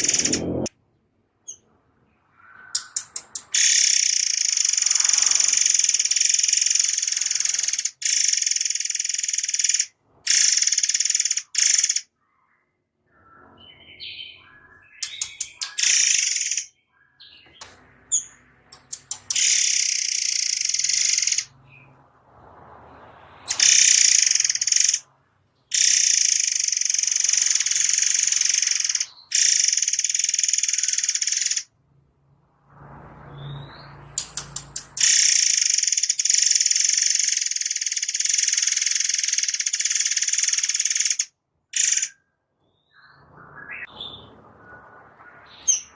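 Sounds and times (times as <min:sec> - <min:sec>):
songbird rattling trill: 0:00.0 - 0:00.7, 0:02.7 - 0:12.1, 0:15.0 - 0:16.7, 0:18.1 - 0:21.5, 0:23.5 - 0:25.1, 0:25.7 - 0:31.7, 0:34.2 - 0:42.2.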